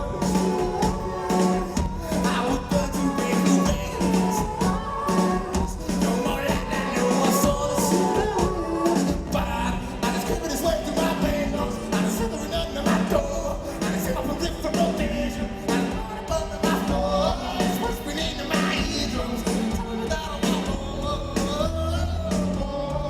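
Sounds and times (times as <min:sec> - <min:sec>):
drum beat: 0:00.0 - 0:23.0
rock band playing live: 0:00.0 - 0:23.0
sung lead vocal: 0:00.0 - 0:23.0.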